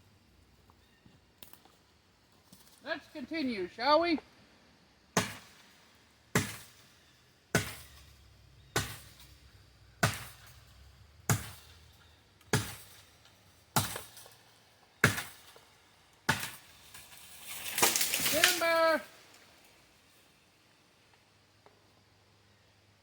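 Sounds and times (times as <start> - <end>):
sword chopping into tree trunk: 5.2 - 5.6, 6.4 - 6.8, 7.6 - 8.0, 8.8 - 9.2, 10.0 - 10.5, 11.3 - 11.7, 12.5 - 13.0, 13.8 - 14.2, 15.0 - 15.5, 16.3 - 17.0.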